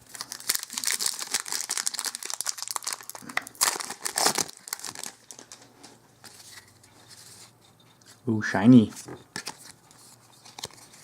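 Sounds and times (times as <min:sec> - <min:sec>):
foil wrapper tearing and crinkling: 0:00.0 - 0:05.6.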